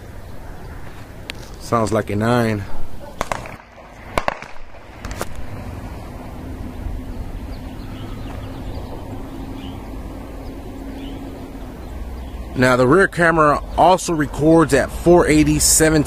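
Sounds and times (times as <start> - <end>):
steady low rumble: 0.0 - 16.0
distant pistol shots: 3.1 - 5.5.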